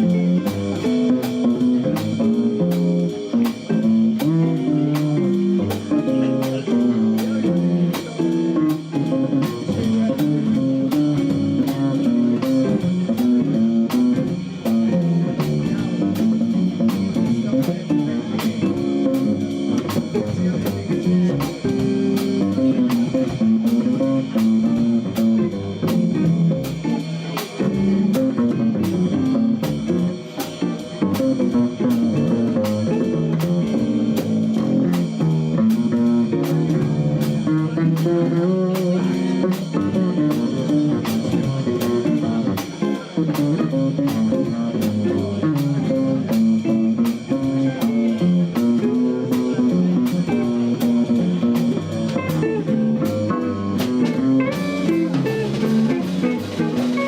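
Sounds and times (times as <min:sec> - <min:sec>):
double bass: 0:00.0 - 0:57.0
drums and percussion: 0:00.0 - 0:57.0
guitar: 0:00.0 - 0:57.0.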